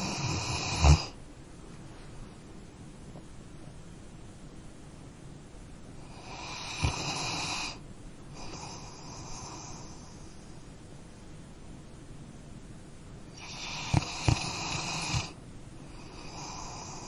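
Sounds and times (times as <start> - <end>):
dog snoring: 0.0 - 1.2, 6.0 - 7.8, 8.4 - 10.3, 13.3 - 17.0.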